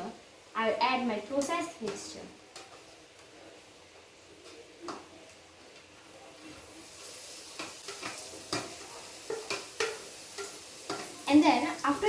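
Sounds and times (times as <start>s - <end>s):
paste sizzling in hot oil: 6.1s - 12.0s.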